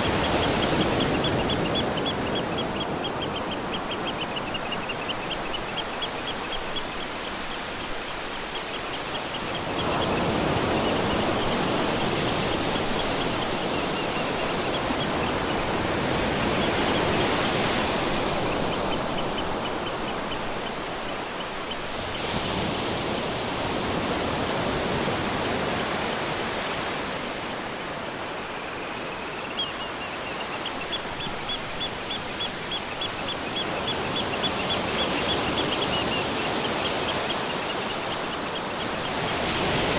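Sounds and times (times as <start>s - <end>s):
rapid high chirping calls: 0.0s - 15.1s, 28.8s - 39.4s
ocean waves washing: 0.0s - 39.9s.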